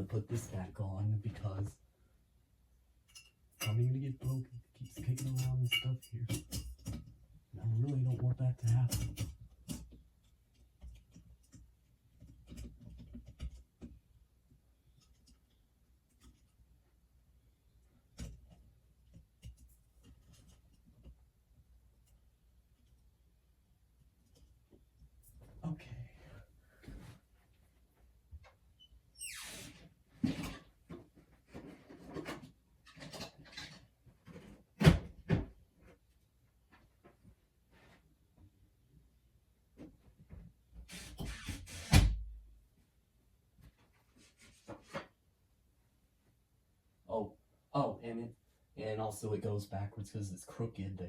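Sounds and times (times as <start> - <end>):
objects knocking and clattering: 4.9 - 7.2.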